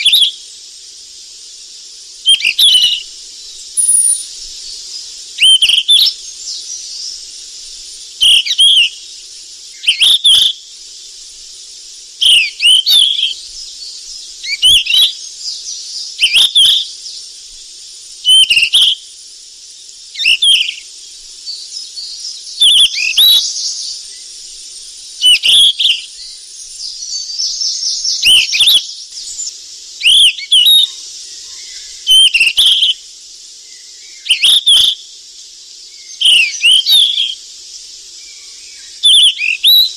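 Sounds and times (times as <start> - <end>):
bird whistled song: 0.0 - 0.5, 2.2 - 7.2, 8.2 - 9.1, 9.7 - 10.7, 12.2 - 17.3, 18.2 - 19.2, 19.8 - 33.0, 33.6 - 35.1, 35.8 - 37.4, 38.2 - 39.9
steady high hiss: 0.0 - 39.9.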